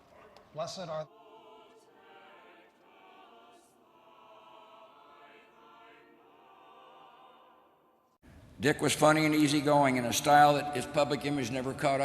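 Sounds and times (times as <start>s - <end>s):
choir singing faintly: 0.0s - 8.2s.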